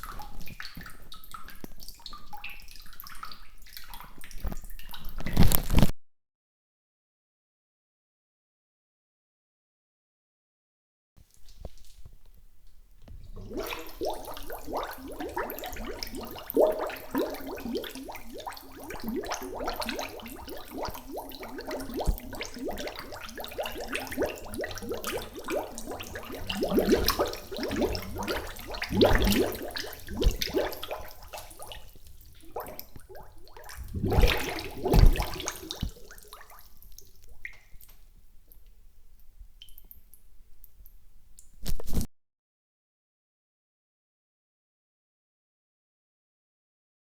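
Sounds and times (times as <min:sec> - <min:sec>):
water churning and splashing: 0:13.3 - 0:37.1.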